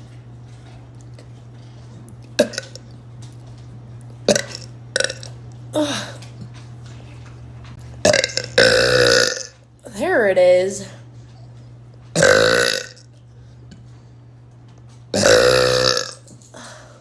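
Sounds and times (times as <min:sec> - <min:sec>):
steady low hum: 0:00.0 - 0:17.0
woman burping: 0:02.4 - 0:02.8, 0:04.3 - 0:06.3, 0:08.0 - 0:09.5, 0:12.2 - 0:13.0, 0:15.2 - 0:16.8.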